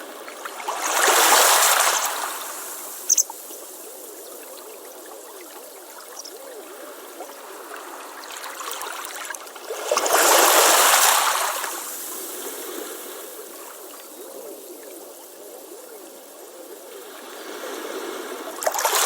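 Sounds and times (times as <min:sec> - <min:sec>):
waves washing on beach: 0:00.0 - 0:03.1, 0:06.6 - 0:14.0, 0:17.0 - 0:19.0
wave breaking: 0:18.5 - 0:19.0.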